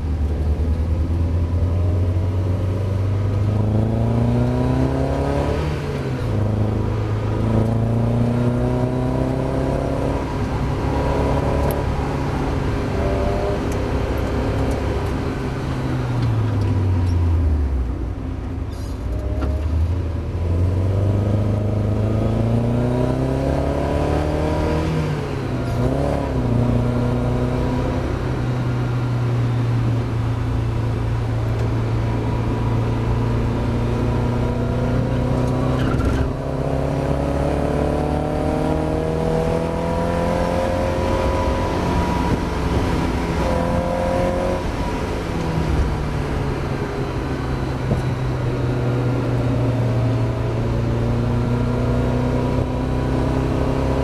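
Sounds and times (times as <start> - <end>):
race car engine revving: 31.4 - 47.1.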